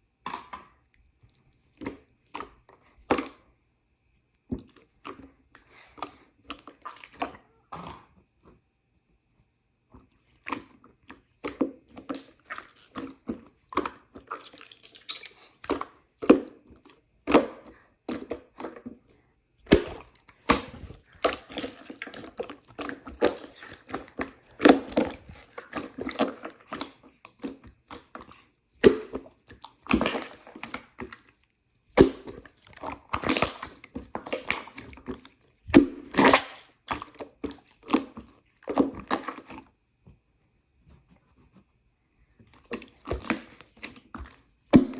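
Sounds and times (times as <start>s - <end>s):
slime squeezed wet clicks: 13.8s - 16.5s.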